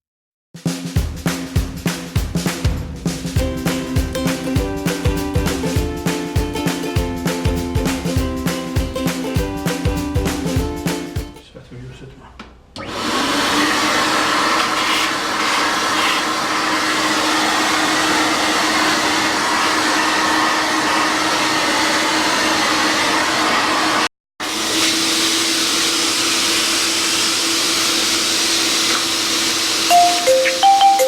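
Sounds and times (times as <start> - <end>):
vacuum cleaner running: 12.8 - 31.0.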